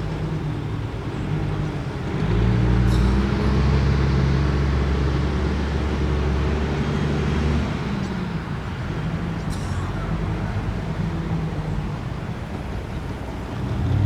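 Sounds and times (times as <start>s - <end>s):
vehicle engine humming: 11.5s - 14.0s.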